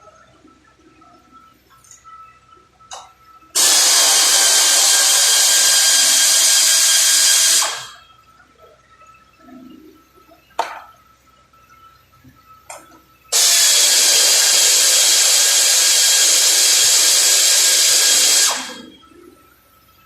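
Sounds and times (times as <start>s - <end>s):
air tool hissing: 3.6s - 8.0s, 13.3s - 18.9s.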